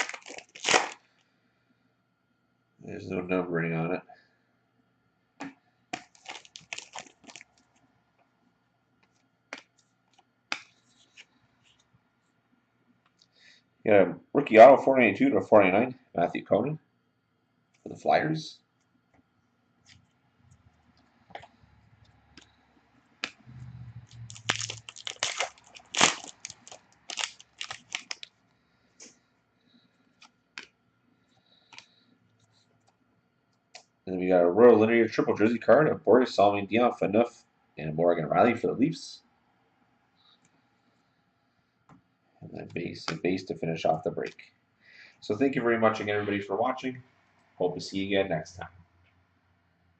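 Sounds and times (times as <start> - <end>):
plastic wrapper crinkling: 0.0 - 1.0, 6.0 - 7.8, 24.0 - 28.4.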